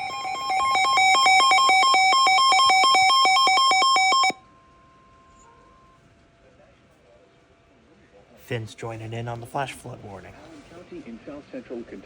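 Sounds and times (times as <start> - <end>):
electronic alert tone trilling: 0.0 - 4.4.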